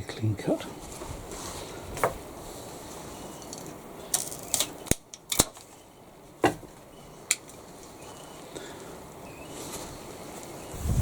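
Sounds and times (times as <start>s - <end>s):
secateurs clicking and cutting stems: 3.4s - 5.7s.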